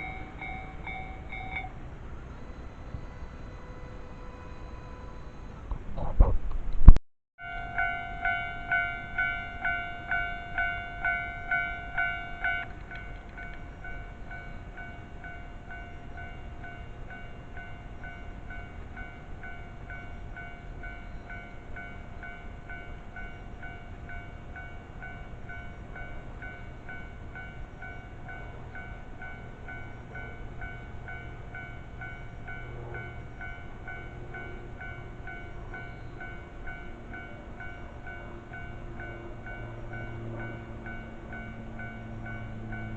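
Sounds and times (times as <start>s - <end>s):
level crossing warning bell: 0.0s - 5.6s, 7.4s - 42.9s.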